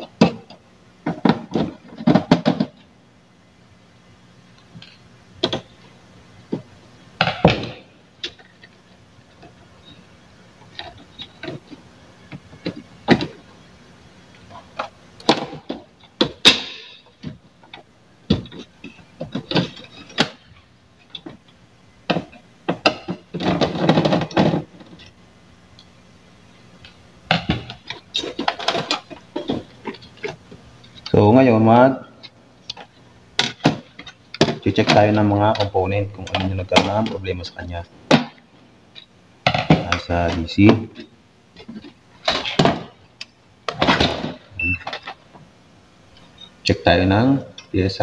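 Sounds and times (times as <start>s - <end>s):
clicks knocks and rattles of parts: 14.4s - 25.2s, 26.8s - 31.2s, 32.7s - 37.2s.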